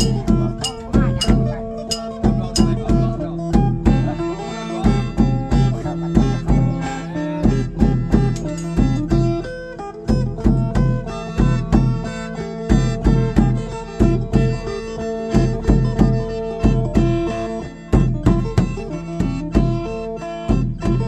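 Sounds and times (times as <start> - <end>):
mouth organ drone: 0.0 - 7.6
drum beating: 0.0 - 14.6, 18.0 - 21.0
plucked lute melody: 0.0 - 21.0.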